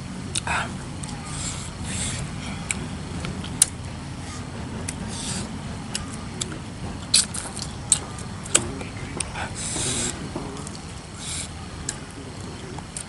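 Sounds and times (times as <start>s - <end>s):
low background hum: 0.0s - 13.0s
mouth clicks and smacks: 4.8s - 13.0s.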